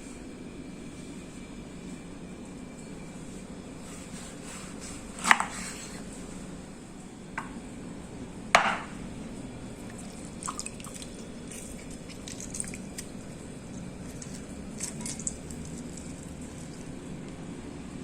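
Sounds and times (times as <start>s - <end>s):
low steady hum: 0.0s - 18.0s
liquid dripping: 9.8s - 17.4s.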